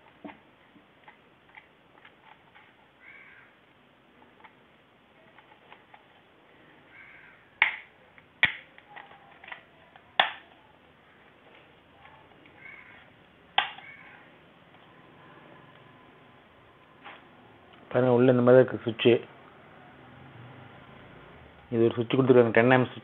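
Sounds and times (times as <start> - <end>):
sharp plastic snaps: 7.6 - 10.5, 13.6 - 13.9.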